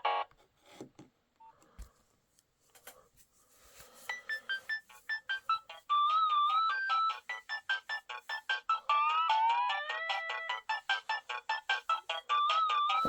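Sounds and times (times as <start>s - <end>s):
phone ringtone tune: 4.1s - 13.0s.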